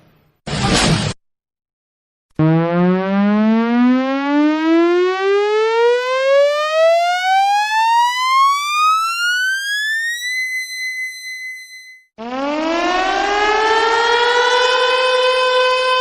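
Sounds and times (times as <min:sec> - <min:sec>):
rising buzzy siren tone: 0:02.4 - 0:16.0.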